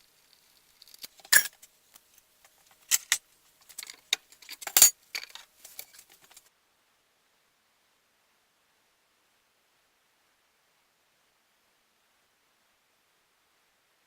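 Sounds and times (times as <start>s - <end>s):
metal tools clinking and rattling: 1.2s - 1.6s, 2.9s - 6.4s.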